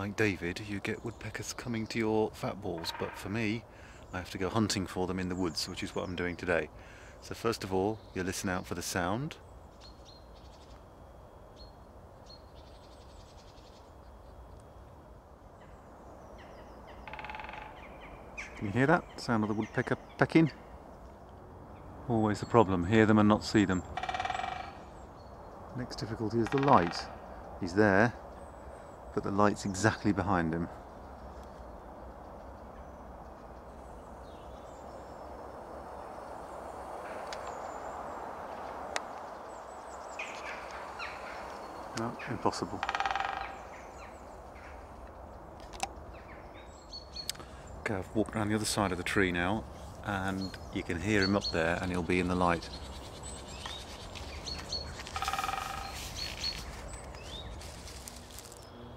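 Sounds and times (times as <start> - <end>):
woodland birdsong with trill: 0.0 - 58.9
faint high bird chirps: 50.0 - 58.9.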